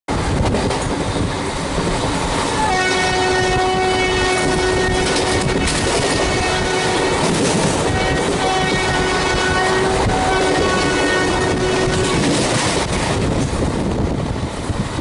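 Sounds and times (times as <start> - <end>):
train rushing past: 0.1 - 15.0
locomotive horn blast: 2.6 - 12.4.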